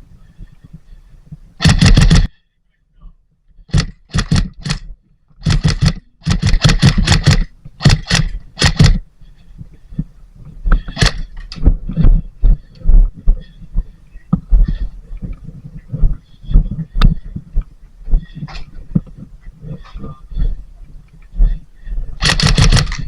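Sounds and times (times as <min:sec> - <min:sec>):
airsoft guns firing bursts: 0:01.6 - 0:02.3, 0:03.7 - 0:04.8, 0:05.4 - 0:09.0, 0:22.2 - 0:23.0.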